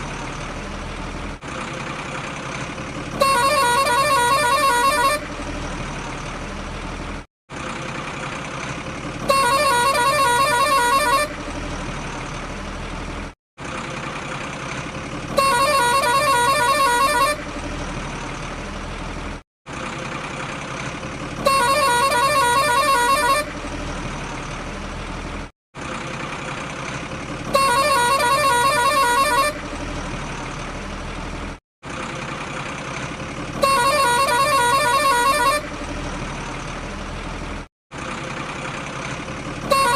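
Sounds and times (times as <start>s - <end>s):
truck engine running: 0.0s - 39.9s
truck horn: 2.9s - 6.2s, 9.2s - 12.6s, 15.2s - 18.8s, 21.3s - 24.9s, 27.3s - 31.0s, 33.4s - 37.1s, 39.4s - 39.9s.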